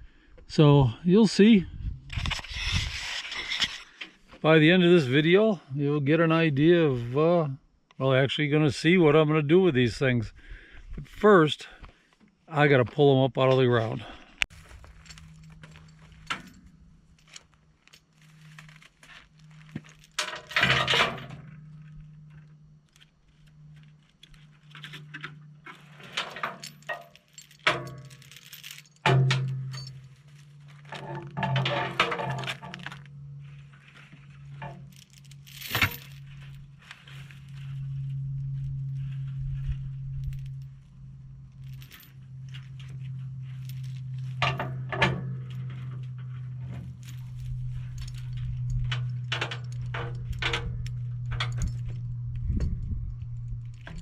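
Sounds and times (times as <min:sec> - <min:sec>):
chain clanks: 0:13.9 - 0:54.0
steady low hum: 0:14.0 - 0:54.0
steel chain rattling: 0:14.6 - 0:54.0.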